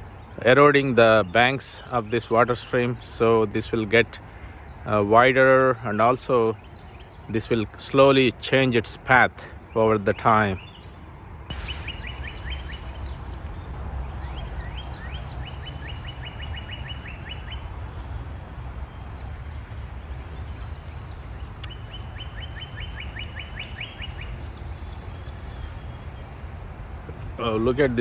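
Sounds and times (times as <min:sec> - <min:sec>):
songbird singing: 0:11.5 - 0:28.0
steady low rumble: 0:11.5 - 0:28.0.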